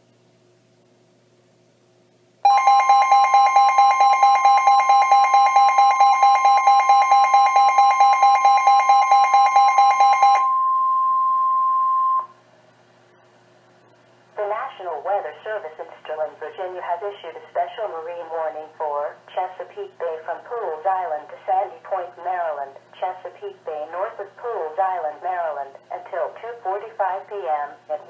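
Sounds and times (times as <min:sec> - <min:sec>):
harsh electronic alarm beeping: 0:02.5 - 0:12.3
steady high alarm tone: 0:02.5 - 0:12.3.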